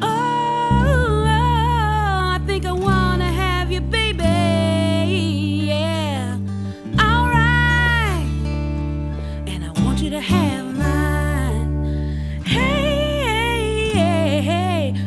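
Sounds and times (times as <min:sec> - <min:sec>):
person singing: 0:00.0 - 0:06.4, 0:09.5 - 0:15.0
guitar chords: 0:00.0 - 0:15.0.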